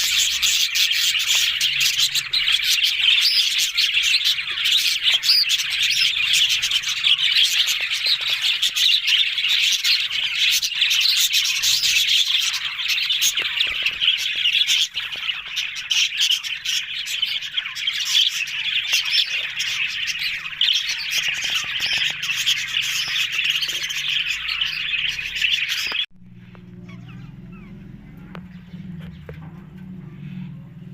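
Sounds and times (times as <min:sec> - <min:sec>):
budgerigars chattering and chirping: 0:00.0 - 0:30.6.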